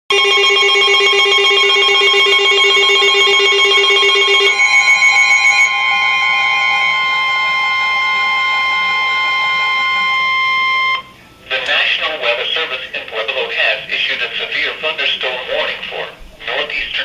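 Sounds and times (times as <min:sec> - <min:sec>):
high-pitched attention tone: 0:00.1 - 0:11.1
fast-pulsing ringing tone: 0:00.1 - 0:11.4.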